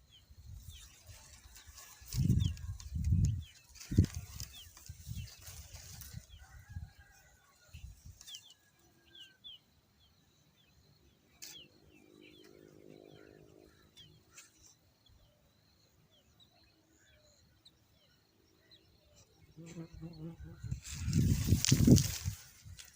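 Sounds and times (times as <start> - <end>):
bird chicks peeping: 0.1 - 7.2.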